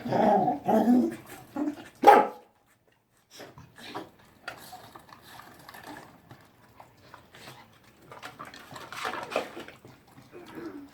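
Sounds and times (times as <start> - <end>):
dog chewing food: 2.6 - 10.9.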